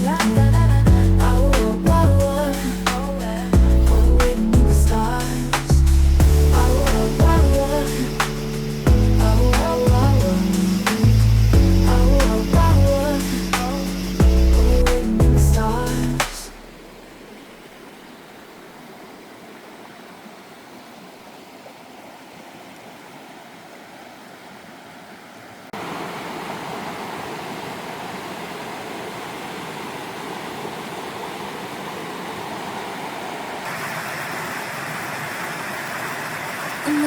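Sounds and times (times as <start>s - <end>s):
steady rushing noise: 0.0s - 19.0s.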